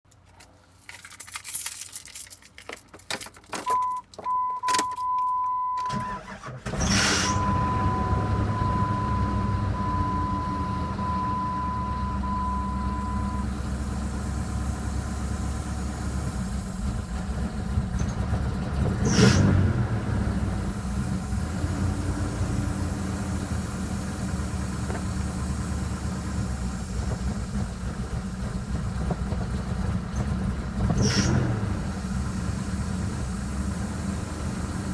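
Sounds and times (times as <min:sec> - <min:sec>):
engine starting and idling: 0:05.8 - 0:34.9
engine tapping and knocking: 0:12.9 - 0:34.9.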